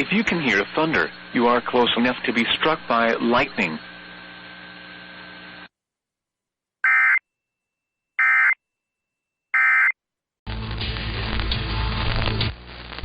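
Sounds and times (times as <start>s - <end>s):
buzzy digital data bursts: 0.0s - 5.0s
steady radio hiss: 0.0s - 5.7s, 11.7s - 13.0s.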